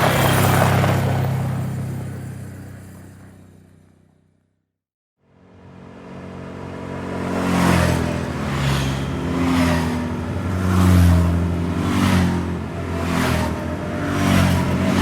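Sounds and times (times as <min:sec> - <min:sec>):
quad bike engine revving: 0:00.0 - 0:03.7.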